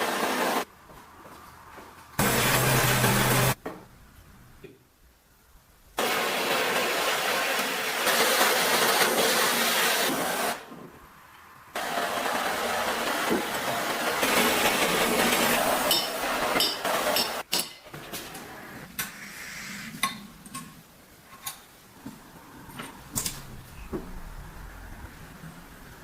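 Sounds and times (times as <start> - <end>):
loud steady hiss: 0.0 - 0.7, 2.2 - 10.8, 11.6 - 21.3.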